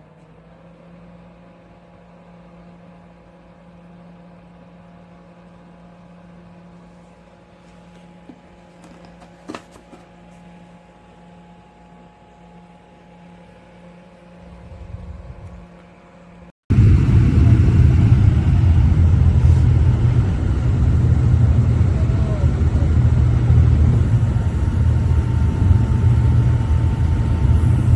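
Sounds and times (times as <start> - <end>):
quiet steady hum: 6.6 - 27.9
loud low rumble: 16.7 - 27.9.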